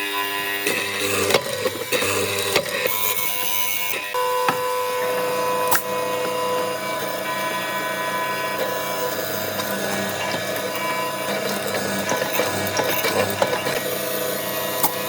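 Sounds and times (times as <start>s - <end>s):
machine hum: 4.1s - 15.0s
tool scraping wood: 8.6s - 14.0s.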